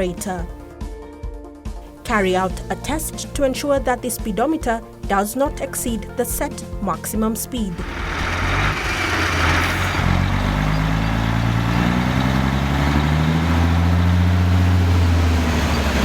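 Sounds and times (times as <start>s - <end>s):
car engine accelerating: 7.7s - 16.0s.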